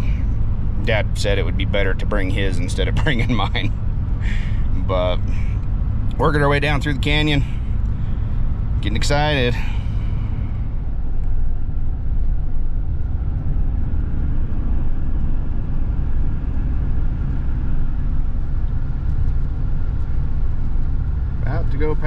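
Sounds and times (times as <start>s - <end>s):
truck engine and tyres rumbling: 0.0s - 22.0s.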